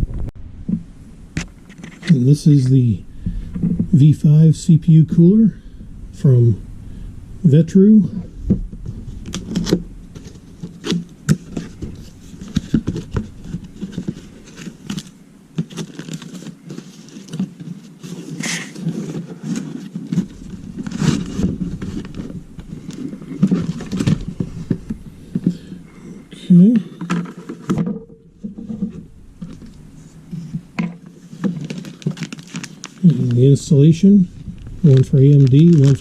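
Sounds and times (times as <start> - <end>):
cardboard packaging clicks and scrapes: 8.5 - 25.7, 26.9 - 33.5, 34.4 - 36.0
packaging rustling: 8.7 - 25.7, 26.8 - 36.0.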